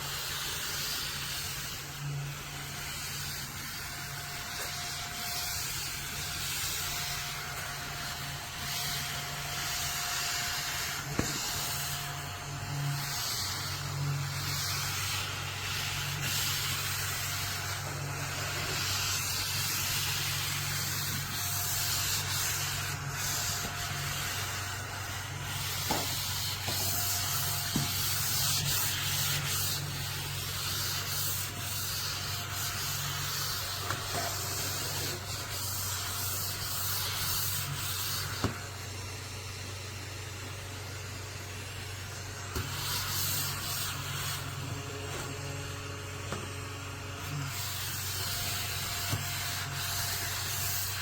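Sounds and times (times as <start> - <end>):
scratchy rubbing hiss: 0.0 - 38.6, 42.5 - 44.8, 47.2 - 51.0
vacuum cleaner hum: 0.0 - 51.0.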